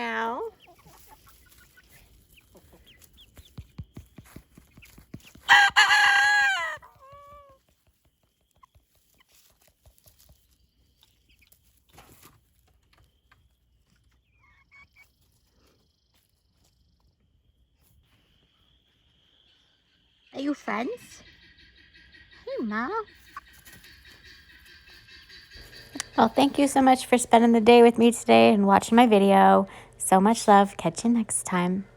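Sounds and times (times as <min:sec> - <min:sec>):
hen clucking: 0:00.0 - 0:03.8, 0:04.8 - 0:07.6, 0:20.4 - 0:27.6
faint bird sounds: 0:00.0 - 0:26.6
rooster crowing: 0:05.5 - 0:07.4.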